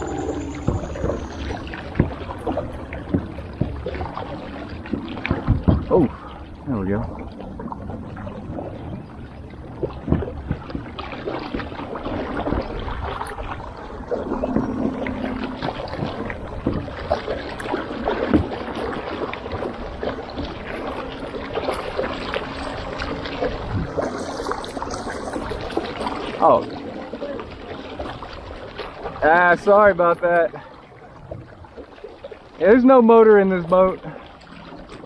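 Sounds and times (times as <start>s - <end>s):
water splashing and churning: 0.0s - 35.0s.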